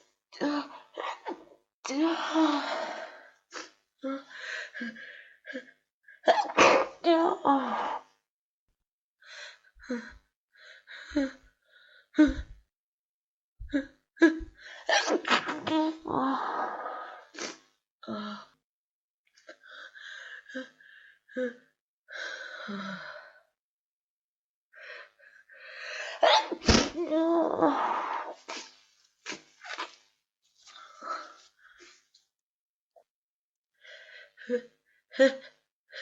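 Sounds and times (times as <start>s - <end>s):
woman sneezing: 6.3s - 7.0s, 26.2s - 27.1s.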